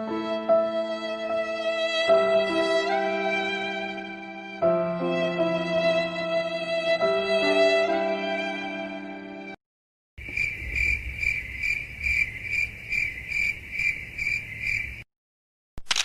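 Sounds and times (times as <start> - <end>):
crickets chirping: 10.2 - 15.0.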